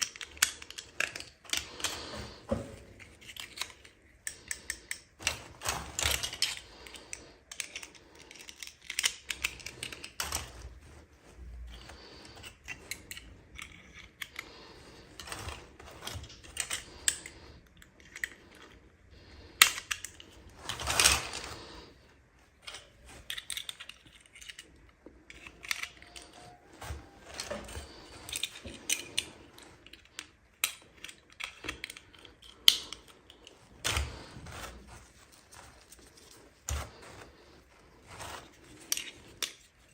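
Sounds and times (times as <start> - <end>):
plastic toy pieces clicking: 0.0 - 2.2, 3.0 - 10.6, 15.1 - 18.8, 19.6 - 21.6, 22.6 - 34.1
packaging rustling: 20.2 - 30.1, 33.2 - 39.9.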